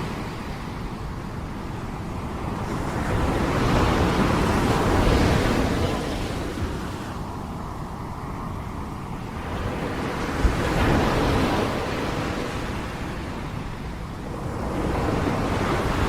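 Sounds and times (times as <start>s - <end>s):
wind rumbling on microphone: 0.0s - 16.0s.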